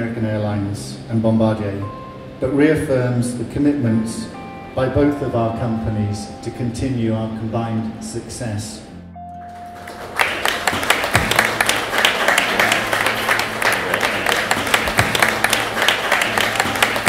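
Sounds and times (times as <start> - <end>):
audience applauding: 9.3 - 17.0.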